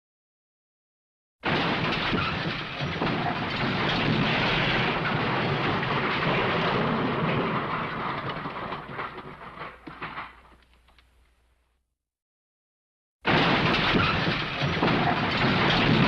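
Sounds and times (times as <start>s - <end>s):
loud rumbling crash: 1.4s - 10.5s, 13.3s - 16.0s
scattered clatters: 1.4s - 11.2s, 13.3s - 16.0s.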